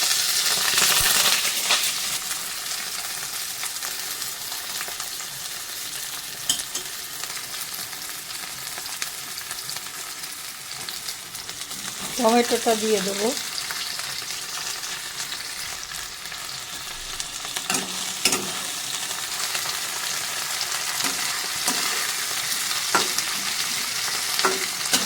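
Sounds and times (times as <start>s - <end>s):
onion sizzling in oil: 0.0s - 25.0s
spatula clicking and scraping: 17.6s - 18.9s, 20.9s - 25.0s.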